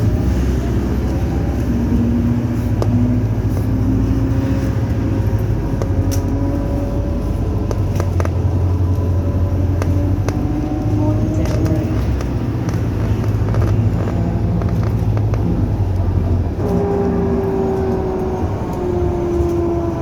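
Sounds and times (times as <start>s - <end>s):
bus engine drone: 0.0s - 20.0s
sharp rattles and clicks: 4.6s - 16.8s.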